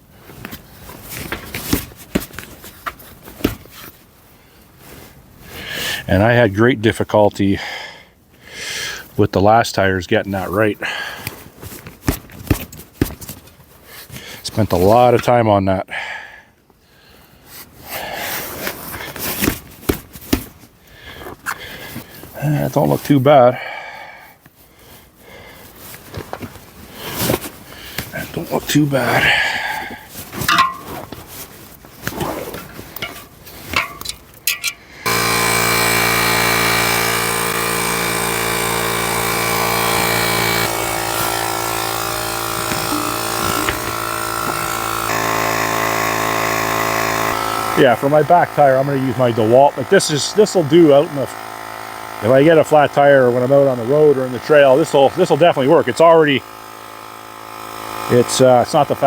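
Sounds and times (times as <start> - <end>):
electric tire inflator running: 10.8 - 11.5, 17.7 - 19.8, 21.3 - 24.6, 25.2 - 31.5, 34.9 - 59.0
rustling handling noise: 30.1 - 34.9.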